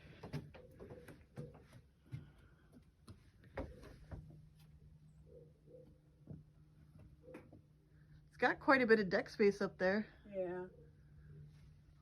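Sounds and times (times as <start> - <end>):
low steady hum: 2.0 - 12.0.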